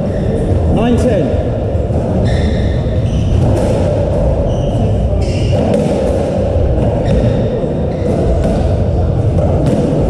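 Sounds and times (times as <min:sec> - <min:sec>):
shoes squeaking on court floor: 0:02.2 - 0:03.6
ball hitting walls and racket: 0:03.1 - 0:10.0.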